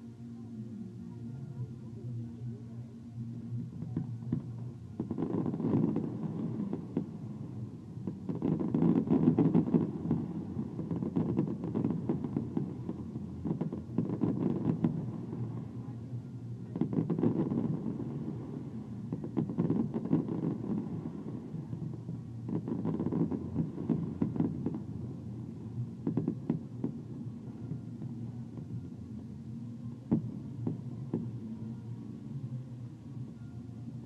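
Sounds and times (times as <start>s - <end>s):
fireworks rumbling bursts: 3.4s - 34.0s
fireworks crackling pops: 3.8s - 7.3s, 8.0s - 16.0s, 16.7s - 25.1s, 26.0s - 28.7s, 30.1s - 31.4s.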